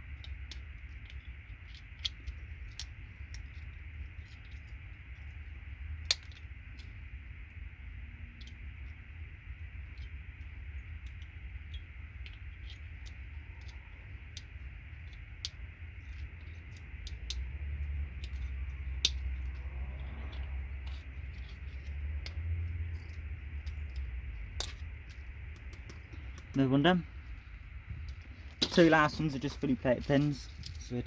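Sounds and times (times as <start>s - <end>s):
low rumble: 16.3s - 31.0s.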